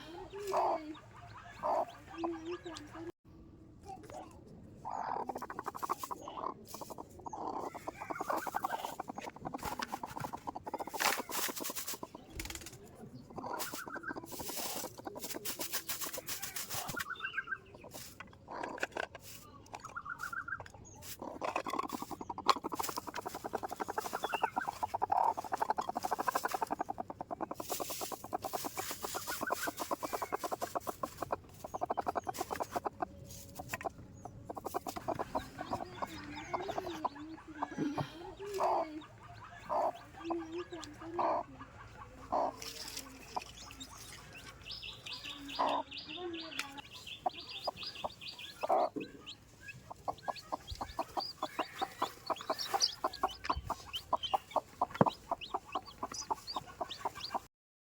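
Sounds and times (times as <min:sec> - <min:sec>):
chickens clucking: 0:00.0 - 0:03.2, 0:04.0 - 0:57.5.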